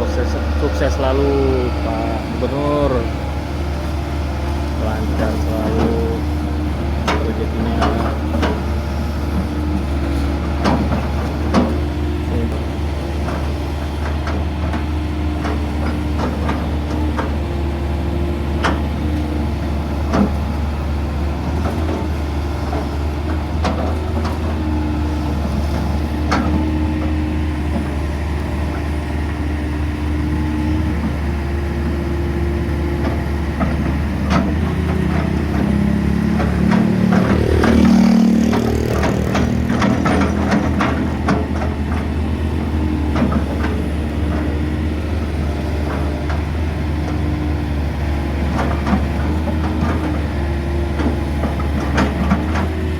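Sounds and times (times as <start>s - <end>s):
excavator diesel drone: 0.0s - 52.9s
hydraulic whine: 0.0s - 52.9s
machine clanks and knocks: 33.0s - 44.9s, 51.0s - 52.9s.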